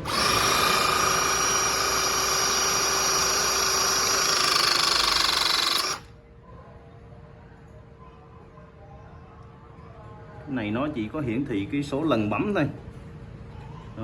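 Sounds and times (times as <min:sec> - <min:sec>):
hydraulic pump motor whine: 0:00.0 - 0:06.1.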